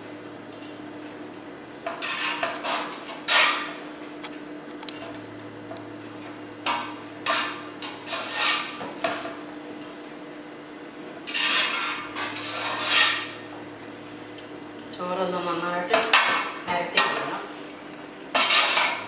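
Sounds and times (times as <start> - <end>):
spoon scraping a pot: 1.9 - 3.7, 6.7 - 9.3, 11.3 - 13.5, 18.3 - 19.0.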